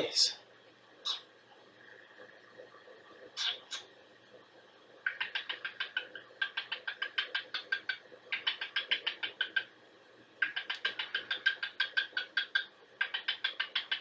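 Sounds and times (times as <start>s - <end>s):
bird chirping: 3.3s - 3.9s, 5.0s - 9.7s, 10.4s - 14.0s.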